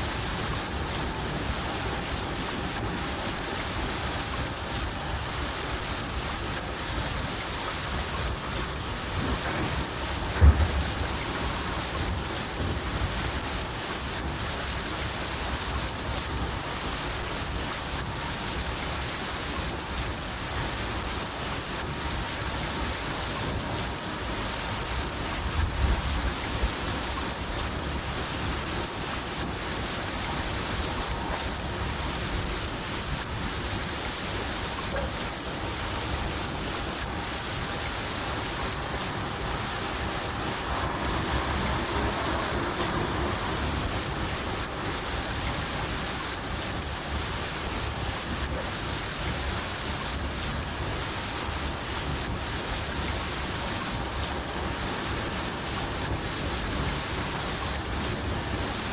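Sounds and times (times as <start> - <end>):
crickets chirping: 0.0 - 58.9
rain hiss: 0.0 - 58.9
low thunder rumbles: 8.7 - 13.4, 25.3 - 27.2.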